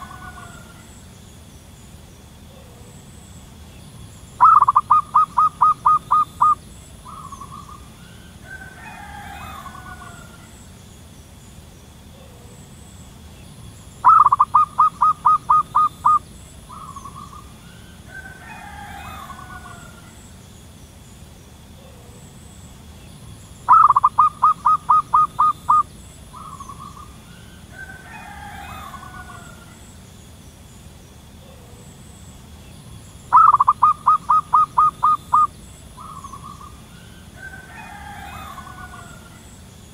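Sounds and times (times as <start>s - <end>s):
dove cooing: 0.0s - 1.1s, 4.4s - 10.7s, 14.0s - 20.2s, 23.7s - 29.9s, 33.3s - 39.6s
faint bird call: 4.4s - 10.8s, 14.0s - 20.4s, 23.7s - 30.0s, 33.3s - 39.6s.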